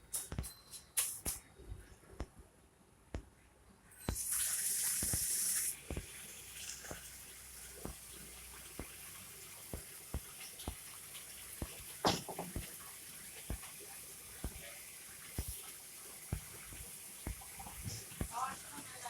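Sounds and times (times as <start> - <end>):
water running from a tap: 4.1 - 19.0.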